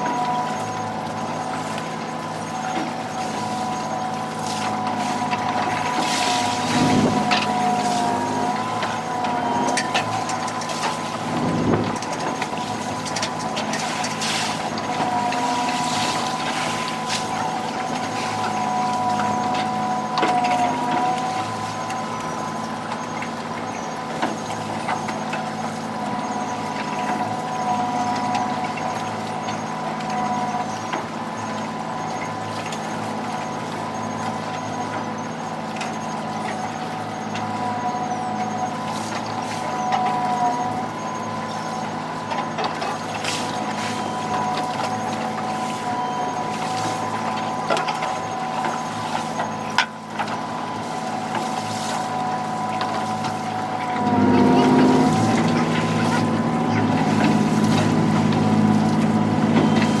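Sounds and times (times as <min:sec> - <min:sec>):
boat engine running: 0:00.0 - 1:00.0
high-pitched whine: 0:51.8 - 1:00.0.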